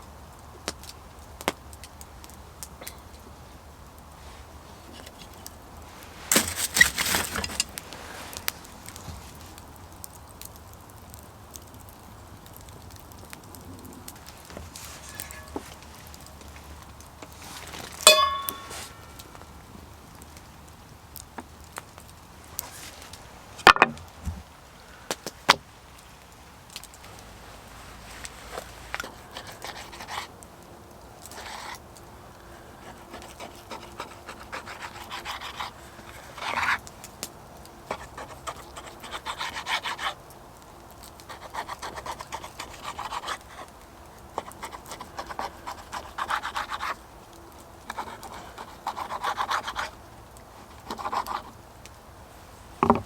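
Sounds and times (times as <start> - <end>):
rough scraping on wood: 4.8 - 8.4, 14.2 - 16.2, 52.7 - 53.0.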